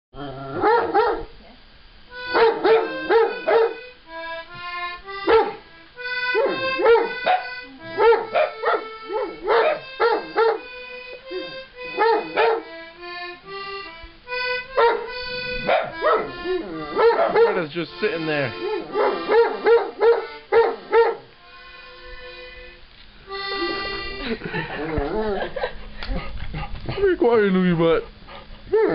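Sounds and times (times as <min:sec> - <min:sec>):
dog barking: 0:00.6 - 0:01.3, 0:02.3 - 0:03.8, 0:05.3 - 0:05.6, 0:06.3 - 0:10.6, 0:11.4 - 0:12.7, 0:14.8 - 0:17.6, 0:18.6 - 0:21.3
musical instrument held notes: 0:02.0 - 0:25.5.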